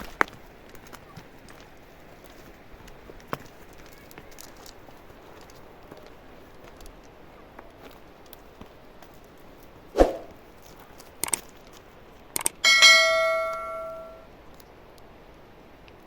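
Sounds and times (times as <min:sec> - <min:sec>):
sharp clicks: 0:11.2 - 0:11.5, 0:12.3 - 0:12.7
metal object ringing when struck: 0:12.6 - 0:14.2.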